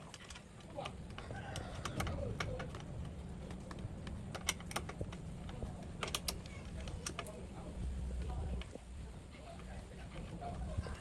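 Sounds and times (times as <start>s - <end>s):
sharp clicks and taps: 0.0s - 7.4s
low steady rumble: 0.0s - 11.0s.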